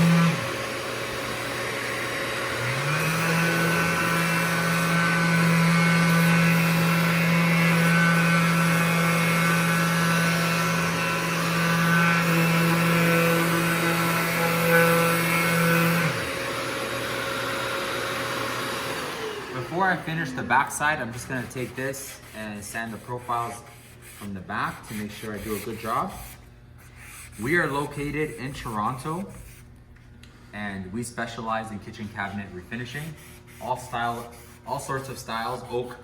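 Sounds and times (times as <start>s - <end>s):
electric sander running: 0.0s - 22.3s.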